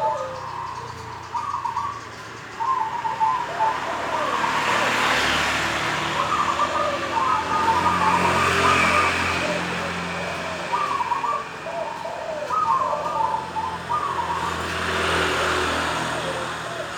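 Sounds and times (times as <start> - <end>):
dove cooing: 0.0 - 16.9
traffic noise: 0.0 - 16.9.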